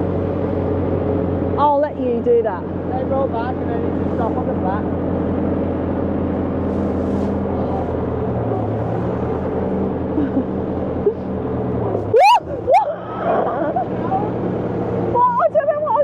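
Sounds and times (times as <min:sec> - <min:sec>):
loud high-pitched squeals: 0:12.2 - 0:12.8.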